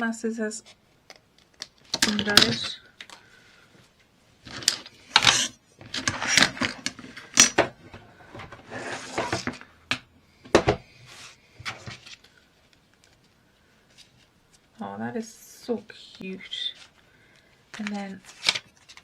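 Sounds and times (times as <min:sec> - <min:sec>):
paper rustling: 0:07.9 - 0:09.7, 0:11.1 - 0:14.6, 0:16.6 - 0:19.0.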